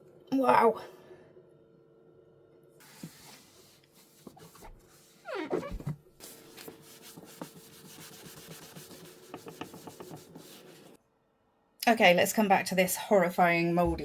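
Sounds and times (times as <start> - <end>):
scrubbing rubbing strokes: 6.2 - 11.0.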